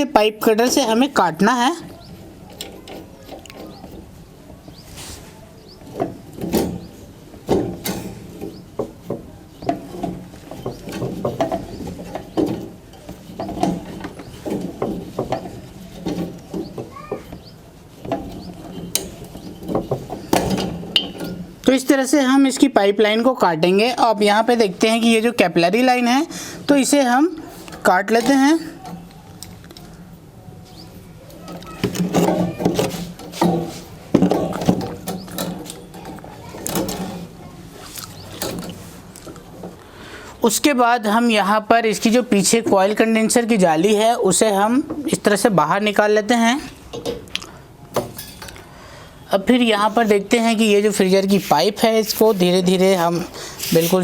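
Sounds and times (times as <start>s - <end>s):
metallic clicks and scrapes: 51.2s - 54.0s.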